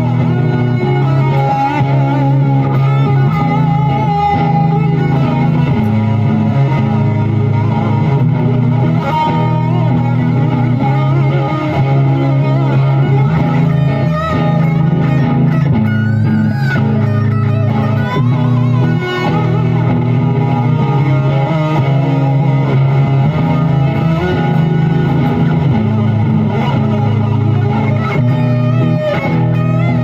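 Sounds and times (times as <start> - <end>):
electric guitar lead line: 0.0 - 30.0
held low guitar notes: 0.0 - 30.0.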